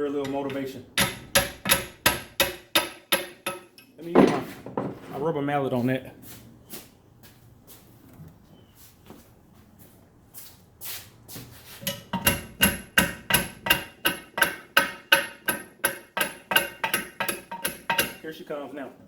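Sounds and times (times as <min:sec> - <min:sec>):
rubber mallet striking metal: 0:01.0 - 0:03.9, 0:11.8 - 0:18.2.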